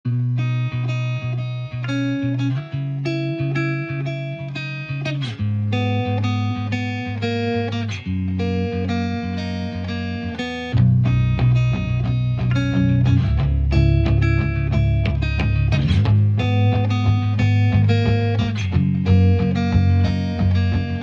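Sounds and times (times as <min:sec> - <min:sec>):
plucked guitar melody: 0:00.1 - 0:21.0
steady bass line: 0:05.3 - 0:21.0.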